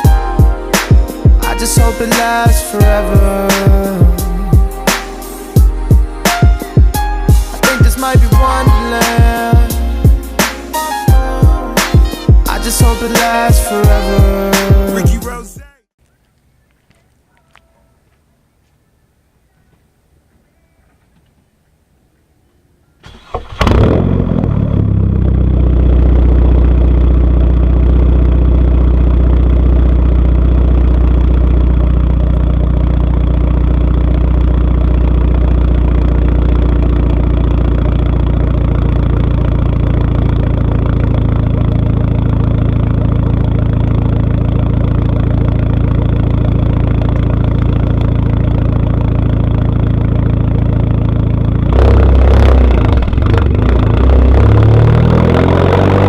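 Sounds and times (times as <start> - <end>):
car engine idling loudly: 23.0 - 56.0.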